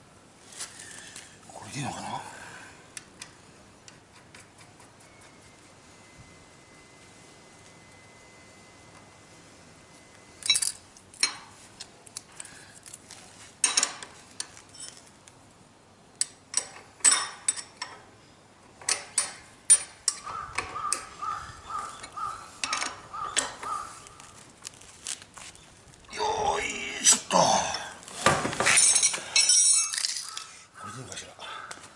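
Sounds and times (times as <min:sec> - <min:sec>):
metal tools clanking: 0:10.4 - 0:11.5, 0:16.6 - 0:18.0, 0:28.6 - 0:30.5.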